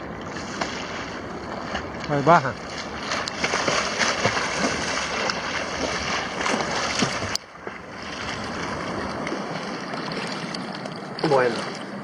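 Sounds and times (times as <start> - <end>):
water sloshing around surfboard: 0.0 - 12.0
wind: 0.0 - 12.0.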